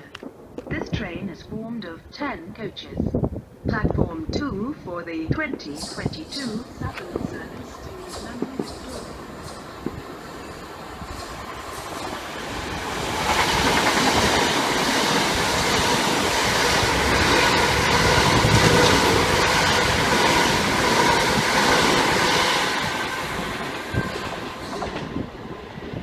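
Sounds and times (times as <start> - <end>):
electric train passing: 5.5 - 26.0.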